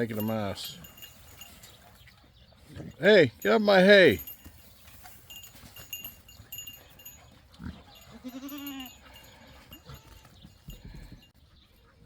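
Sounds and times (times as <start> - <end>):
goat bleating: 7.9 - 9.1.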